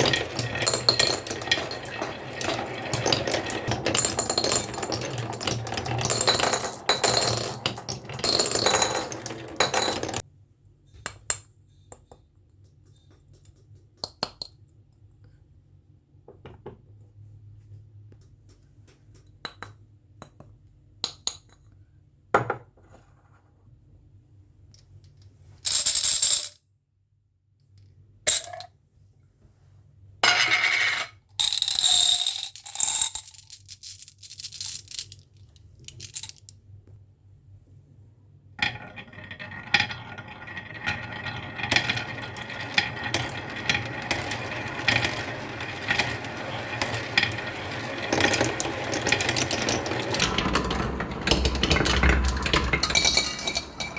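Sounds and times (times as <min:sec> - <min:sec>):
marbles clattering down a run: 0:00.0 - 0:10.2, 0:30.3 - 0:35.2, 0:35.9 - 0:36.5, 0:38.6 - 0:53.9.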